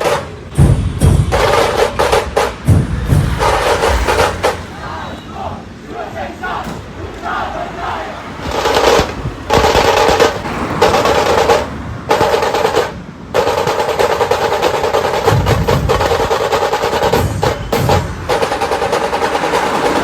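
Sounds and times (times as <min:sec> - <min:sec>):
drum rolls: 0:00.0 - 0:07.4, 0:08.4 - 0:20.0.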